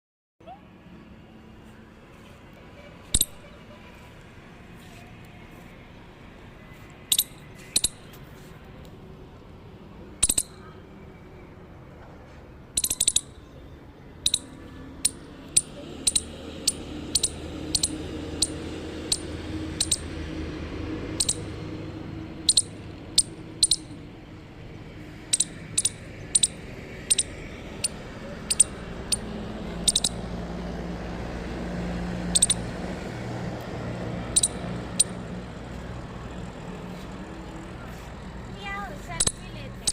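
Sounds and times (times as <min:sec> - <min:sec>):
squirrel chirping: 0:03.0 - 0:03.5, 0:07.1 - 0:08.2, 0:10.2 - 0:10.7, 0:12.7 - 0:20.4, 0:21.0 - 0:24.1, 0:25.1 - 0:30.4, 0:32.2 - 0:32.7, 0:34.2 - 0:35.2, 0:39.0 - 0:39.9.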